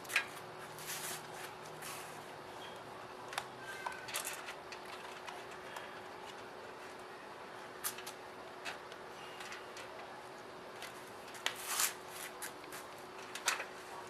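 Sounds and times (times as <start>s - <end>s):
faint steady hum: 0.0s - 14.0s
plastic parts rustling: 3.8s - 6.4s.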